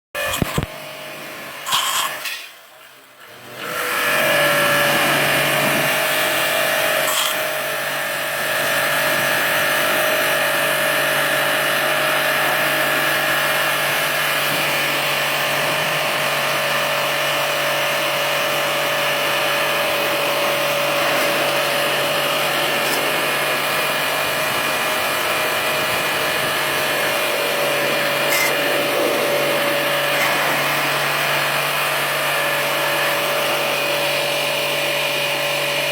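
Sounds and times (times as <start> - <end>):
electric motor machine running: 3.3 - 35.9.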